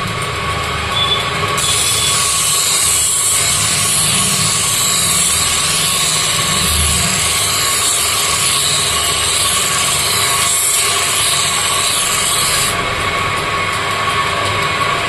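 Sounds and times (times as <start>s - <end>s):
sharpening wheel motor whine: 1.0s - 13.3s
blade grinding hiss: 1.6s - 12.8s.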